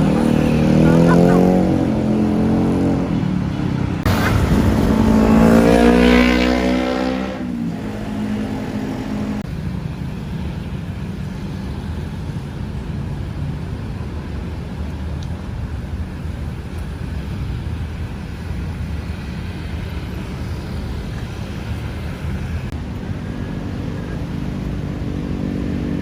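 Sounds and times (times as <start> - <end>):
vehicle accelerating past: 0.0 - 9.4
road traffic: 0.0 - 26.0.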